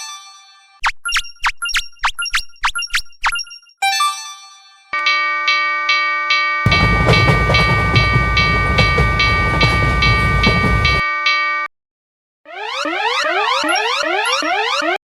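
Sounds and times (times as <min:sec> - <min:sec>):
railroad crossing alarm ringing: 0:05.0 - 0:11.7, 0:12.5 - 0:15.0
train rumbling past: 0:06.7 - 0:11.0.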